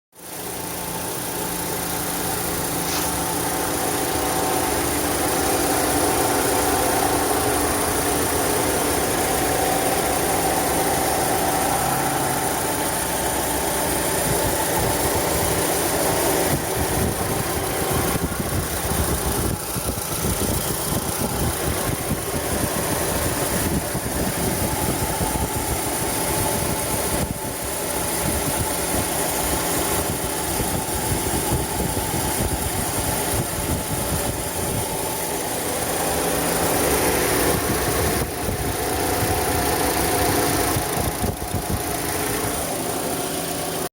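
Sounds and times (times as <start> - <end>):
car engine idling: 0.2 - 43.9.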